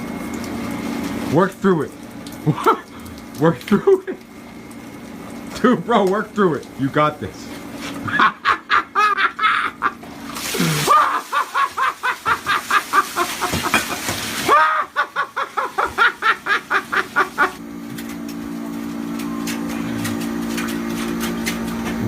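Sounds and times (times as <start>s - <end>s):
steady motor hum: 0.0s - 22.0s
men laughing hard: 8.0s - 17.6s.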